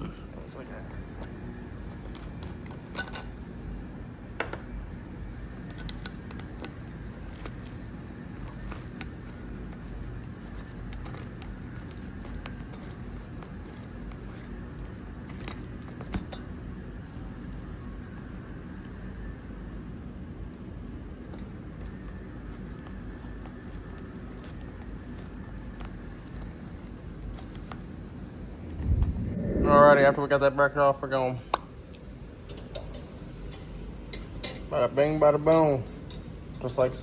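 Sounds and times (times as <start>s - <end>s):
steady low hum: 26.9s - 37.0s.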